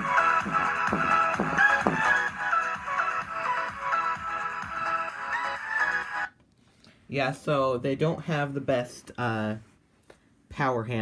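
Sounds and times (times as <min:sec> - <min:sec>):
electronic dance music through speaker: 0:00.0 - 0:06.3.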